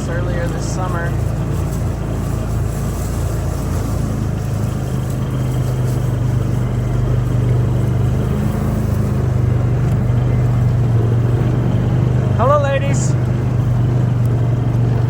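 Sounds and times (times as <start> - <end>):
vehicle engine running low drone: 0.0 - 15.0.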